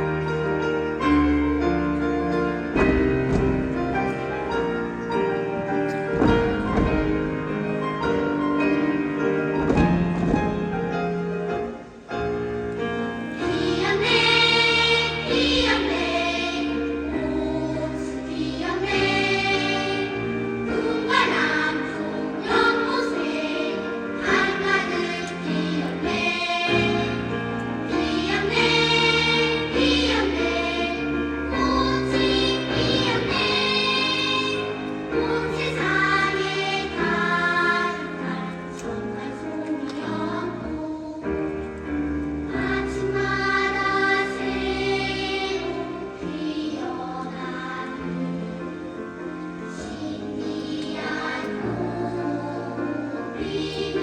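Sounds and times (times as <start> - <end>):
children's choir singing: 0.0 - 54.0
piano accompaniment: 0.0 - 54.0.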